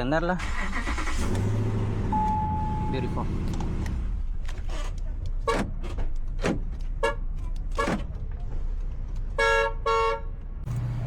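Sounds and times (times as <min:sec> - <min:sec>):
car horn beep: 0:02.1 - 0:03.2, 0:09.4 - 0:10.4.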